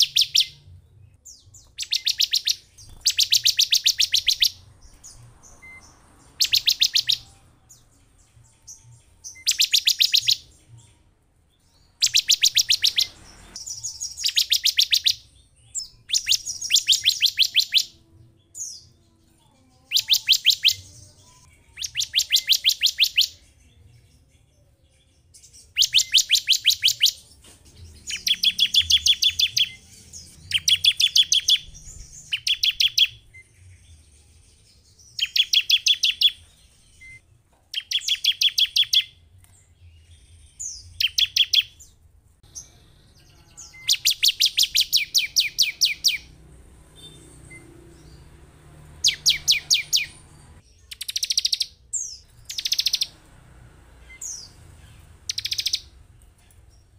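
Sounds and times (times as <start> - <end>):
bird ticking trills: 52.4 - 53.3, 54.1 - 56.0.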